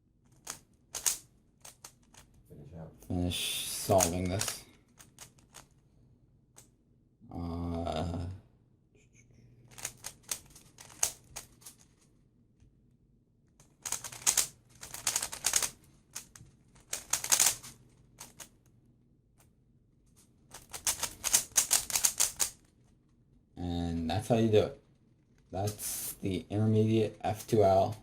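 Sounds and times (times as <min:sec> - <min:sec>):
puzzle cube plastic clicking: 0:00.3 - 0:02.4, 0:03.8 - 0:05.8, 0:09.7 - 0:12.0, 0:13.6 - 0:18.7, 0:20.5 - 0:22.7.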